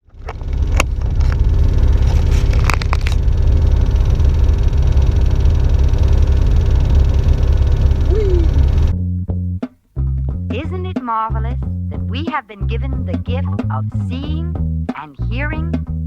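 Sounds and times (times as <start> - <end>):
aircraft engine droning: 0.0 - 9.0.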